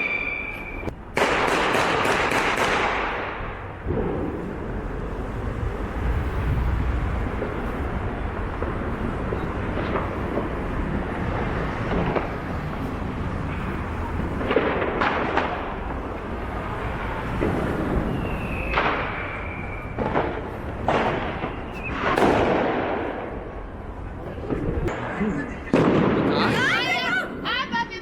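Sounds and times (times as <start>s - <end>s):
firework whistle: 0.0s - 0.9s, 17.0s - 20.4s, 21.3s - 22.4s
firecracker bangs: 0.0s - 23.6s, 24.4s - 26.7s
background rumble: 2.9s - 26.4s.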